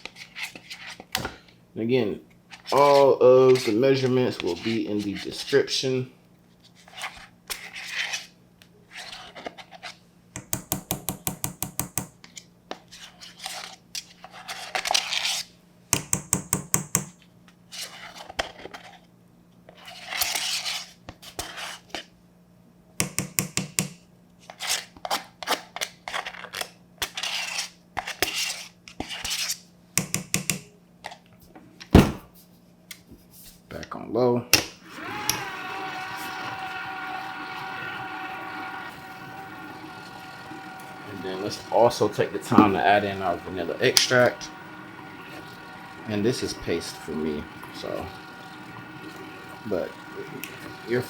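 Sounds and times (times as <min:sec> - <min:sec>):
rapid tapping against container: 0:10.4 - 0:12.1
utensil scraping a tub: 0:35.6 - 0:51.0.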